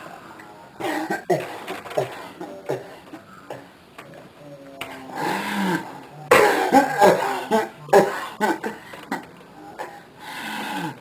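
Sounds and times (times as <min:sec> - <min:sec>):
strained voiced sound: 0:00.0 - 0:11.0
person coughing hard: 0:06.3 - 0:09.2.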